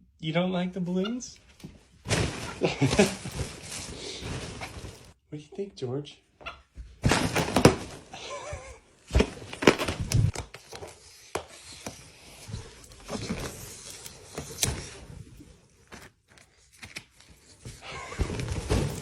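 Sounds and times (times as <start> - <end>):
balloons knocking and rustling: 2.0 - 5.2, 6.8 - 13.6, 17.5 - 19.0.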